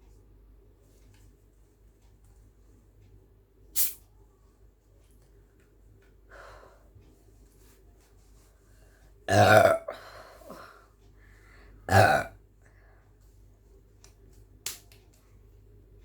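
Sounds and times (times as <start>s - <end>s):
woman burping: 9.3s - 10.6s, 11.9s - 12.4s.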